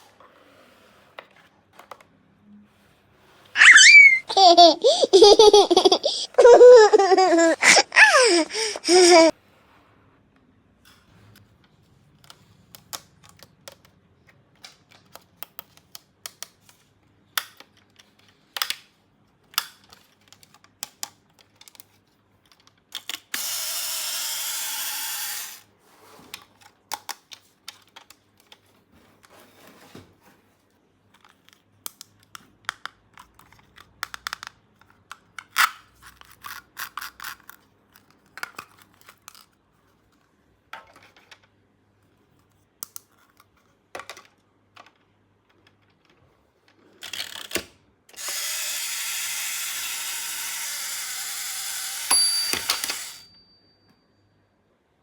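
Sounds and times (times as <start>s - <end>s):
plastic toy parts clicking: 12.2s - 14.0s, 14.6s - 23.7s, 26.5s - 28.6s, 31.1s - 39.6s, 47.0s - 48.8s, 50.8s - 53.2s.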